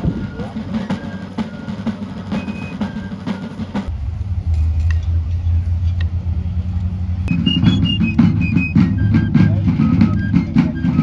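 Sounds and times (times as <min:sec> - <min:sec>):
music with drums and high notes: 0:00.0 - 0:05.8, 0:07.3 - 0:11.0
steady low rumble: 0:03.6 - 0:09.9.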